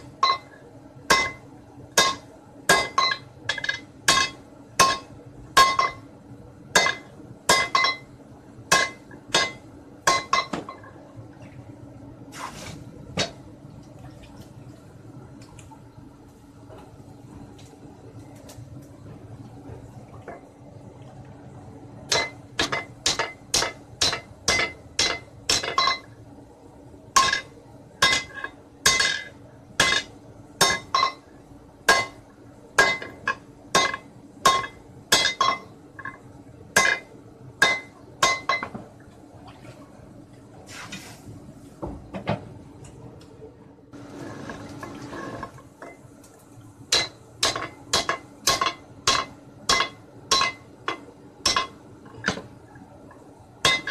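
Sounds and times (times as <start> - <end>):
brief hiss: 12.3 - 12.8
sledgehammer striking steel bar: 27.2 - 31.2.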